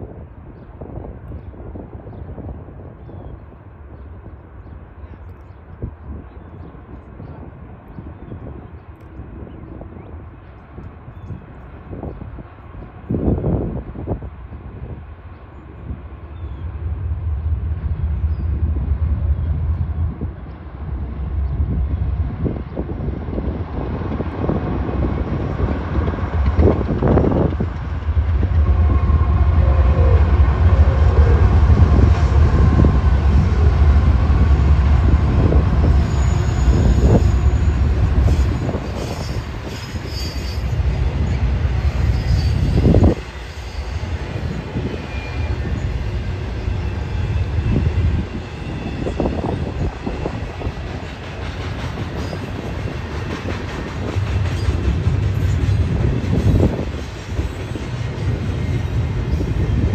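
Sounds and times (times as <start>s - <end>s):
freight train rumbling past: 0.0s - 59.9s
high wheel squeals: 35.8s - 41.3s, 42.0s - 46.1s.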